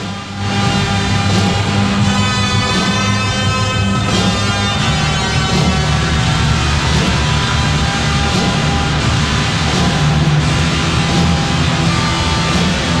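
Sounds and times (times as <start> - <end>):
rock music with electric guitar: 0.0 - 13.0.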